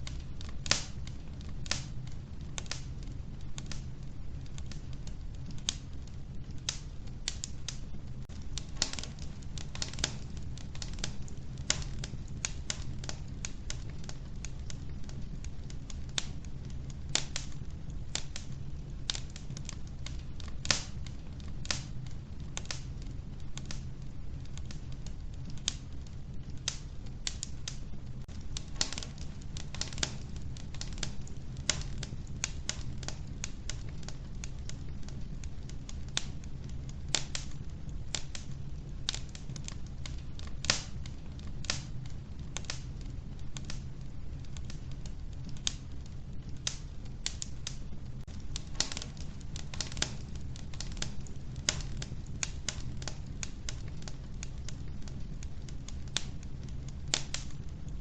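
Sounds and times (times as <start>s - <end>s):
logs crackling in stove: 0.0s - 58.0s
low fire rumble: 0.0s - 58.0s.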